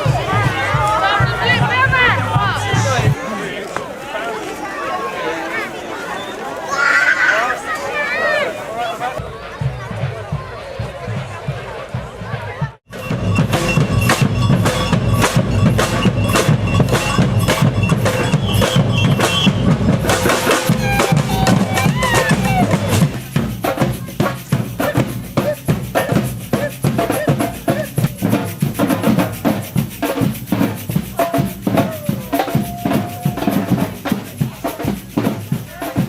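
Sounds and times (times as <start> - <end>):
samba drums playing: 0.0 - 3.2, 11.1 - 36.0.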